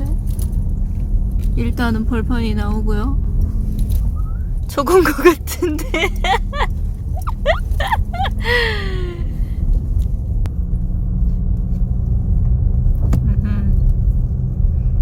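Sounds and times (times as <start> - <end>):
car driving on rough road: 0.0 - 15.0
person exclaiming: 5.8 - 9.2.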